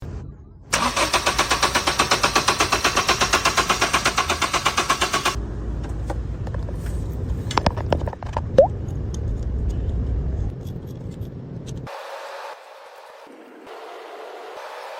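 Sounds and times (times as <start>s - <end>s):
car engine cranking: 0.7s - 5.4s.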